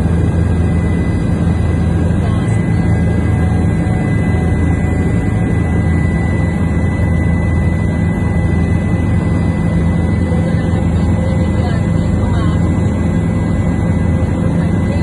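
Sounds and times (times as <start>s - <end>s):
faint high whine: 0.0s - 15.0s
helicopter engine and rotor drone: 0.0s - 15.0s.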